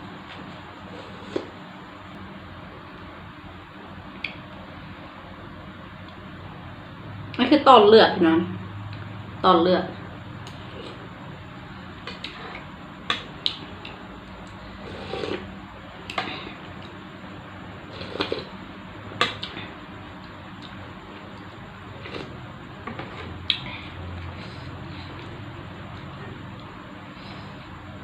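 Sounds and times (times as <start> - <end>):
chewing and slurping soup: 13.8 - 15.5, 17.9 - 18.6, 20.2 - 23.6.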